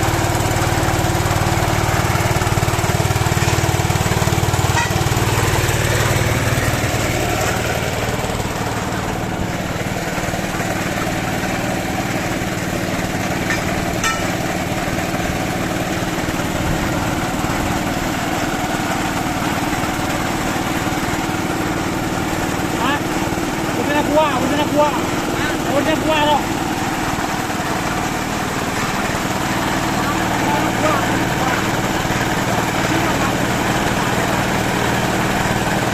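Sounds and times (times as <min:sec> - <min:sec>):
small pump engine running: 0:00.0 - 0:35.9.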